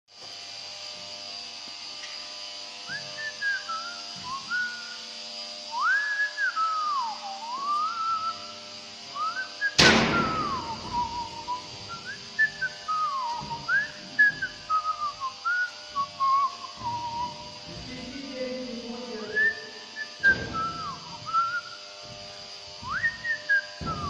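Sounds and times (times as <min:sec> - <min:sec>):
person whistling a tune: 0:02.9 - 0:05.0, 0:05.7 - 0:08.5, 0:09.2 - 0:17.5, 0:19.4 - 0:21.8, 0:22.9 - 0:24.0
loud thump: 0:09.8 - 0:11.2, 0:20.2 - 0:21.0, 0:23.8 - 0:24.0.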